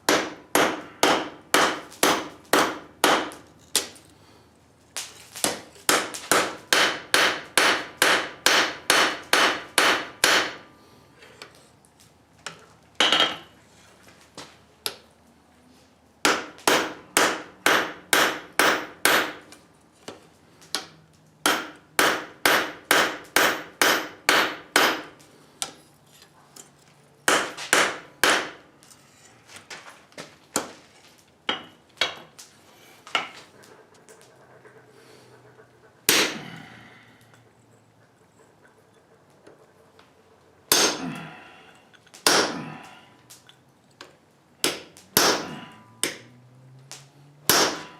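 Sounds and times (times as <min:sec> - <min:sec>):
hammer striking metal on anvil: 0:00.1 - 0:03.9, 0:05.4 - 0:10.6, 0:13.0 - 0:13.5, 0:16.2 - 0:19.4, 0:20.8 - 0:25.8, 0:27.3 - 0:28.6, 0:36.1 - 0:36.6, 0:40.7 - 0:41.2, 0:42.2 - 0:42.7, 0:44.6 - 0:46.3, 0:47.5 - 0:47.9.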